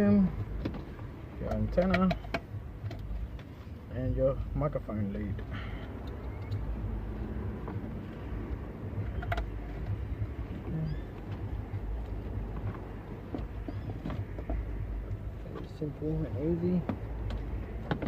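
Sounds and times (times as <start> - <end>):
plastic plugs clicking: 1.4 - 3.5, 9.0 - 10.0
low rumble: 2.4 - 18.0.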